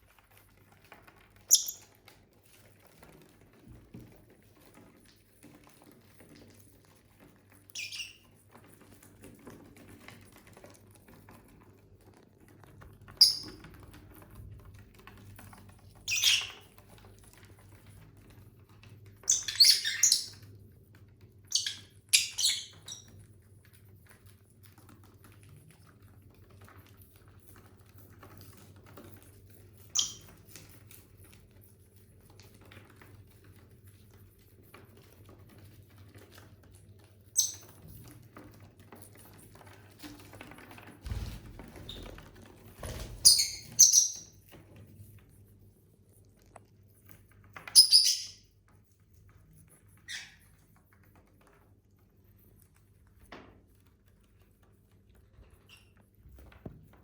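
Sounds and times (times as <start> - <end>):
lovebirds chirping: 1.5 - 1.9, 16.1 - 16.6, 19.3 - 20.4, 21.5 - 23.1, 43.2 - 44.3, 47.8 - 48.4.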